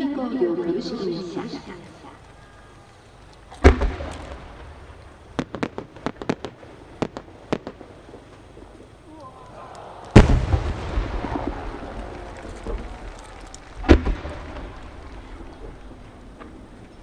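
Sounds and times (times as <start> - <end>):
firework launch thump: 3.6 - 4.9, 10.1 - 16.6
loud firework burst boom: 3.6 - 8.1, 10.1 - 16.8.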